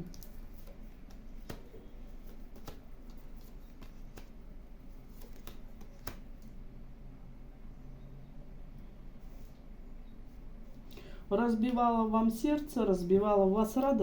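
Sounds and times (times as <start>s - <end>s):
cards clicking and tapping: 0.0s - 4.4s, 5.1s - 6.5s
low room hum: 0.0s - 14.0s.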